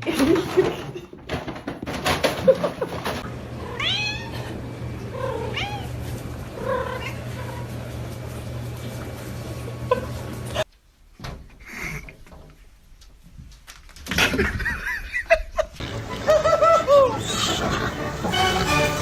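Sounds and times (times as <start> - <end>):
cat meowing: 3.6 - 4.4, 5.2 - 5.9.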